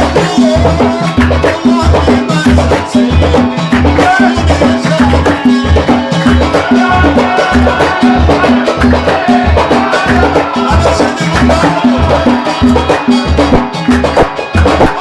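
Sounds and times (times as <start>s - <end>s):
deep drum beat: 0.0s - 15.0s
folk band melody: 0.0s - 15.0s.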